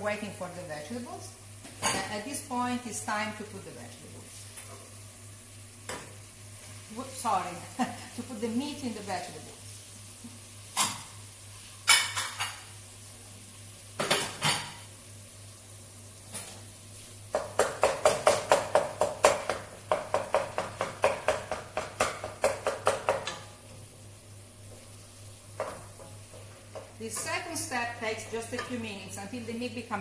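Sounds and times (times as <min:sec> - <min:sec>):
utensil knocking and scraping a pan: 0:25.6 - 0:27.4.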